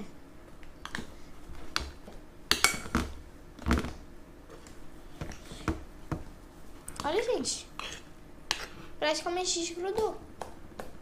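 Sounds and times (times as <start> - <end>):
spoon scraping against pot: 7.8 - 8.8.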